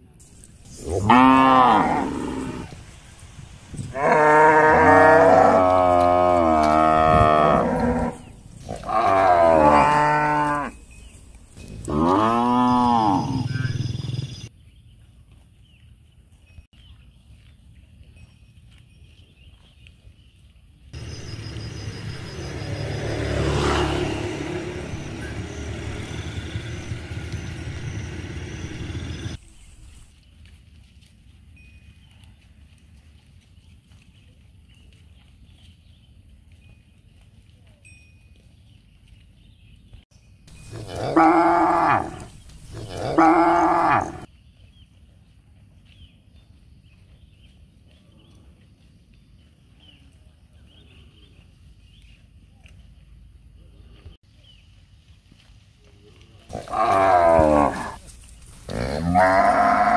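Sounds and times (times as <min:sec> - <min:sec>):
cattle mooing: 0:00.7 - 0:02.8, 0:03.9 - 0:10.8, 0:11.7 - 0:13.9, 0:40.7 - 0:44.3, 0:56.5 - 0:59.9
vehicle engine rumbling past: 0:21.0 - 0:30.1.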